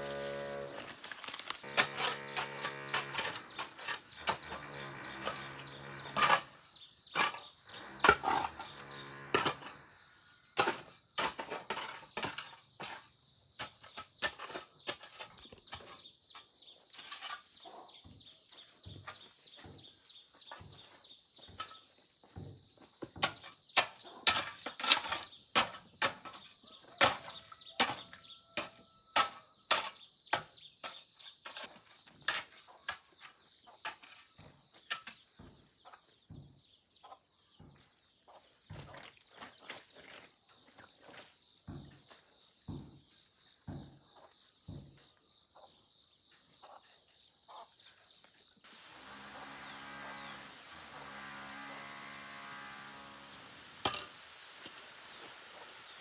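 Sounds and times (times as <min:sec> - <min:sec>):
digging tool scraping mud: 0:00.0 - 0:09.8, 0:10.6 - 0:16.1, 0:23.2 - 0:35.2
insects chirring: 0:00.0 - 0:27.7.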